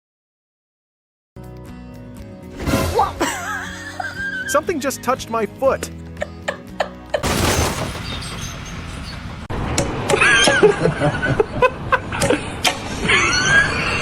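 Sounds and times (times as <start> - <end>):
loud crash: 7.2 - 9.5.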